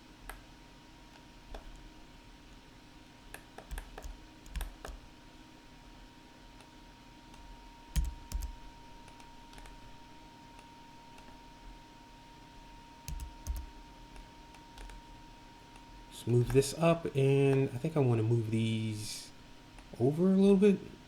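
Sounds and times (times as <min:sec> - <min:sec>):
faint steady hum: 0:00.0 - 0:21.0
keyboard and mouse clicking: 0:03.3 - 0:05.0, 0:08.0 - 0:09.7, 0:13.1 - 0:13.7, 0:14.8 - 0:15.0.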